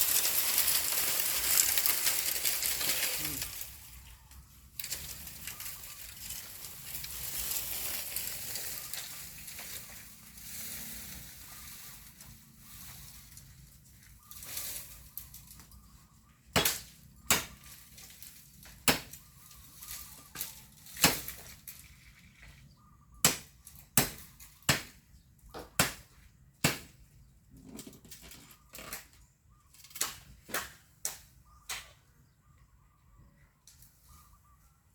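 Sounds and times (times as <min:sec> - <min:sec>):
bamboo rustling and crackling: 0:00.0 - 0:32.2, 0:33.6 - 0:34.9
blade chopping bamboo: 0:16.5 - 0:17.7, 0:18.7 - 0:19.2, 0:20.9 - 0:21.5, 0:23.2 - 0:25.0, 0:25.6 - 0:27.0.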